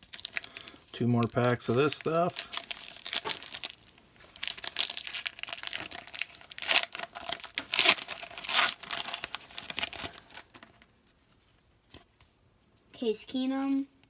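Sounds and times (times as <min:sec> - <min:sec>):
plastic wrapper torn and crinkled: 0:00.0 - 0:10.9.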